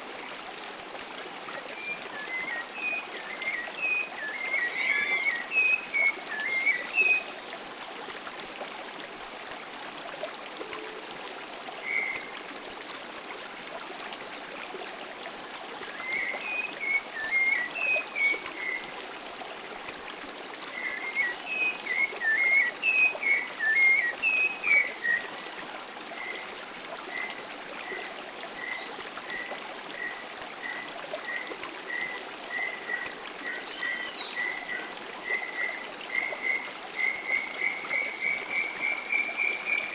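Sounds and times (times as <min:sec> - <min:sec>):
birds singing: 0:20.7 - 0:25.3.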